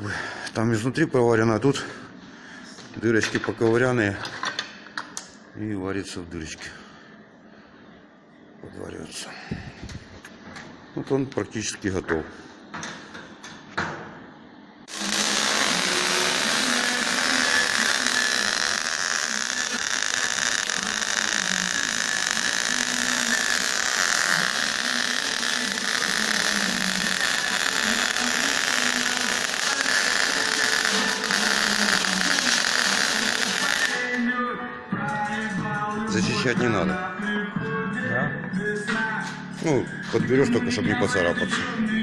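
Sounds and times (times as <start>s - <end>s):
electric welding arc crackling: 14.9s - 34.3s.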